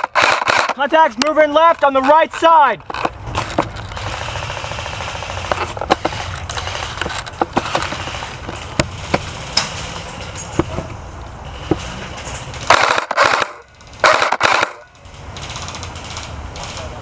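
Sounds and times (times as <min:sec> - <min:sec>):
rapid rattle of airsoft rifles: 0:00.0 - 0:10.8, 0:11.8 - 0:17.0.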